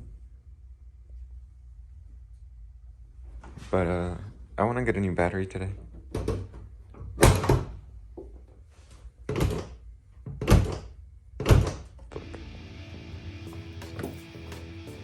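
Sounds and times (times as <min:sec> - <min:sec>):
background music: 0:12.2 - 0:15.0.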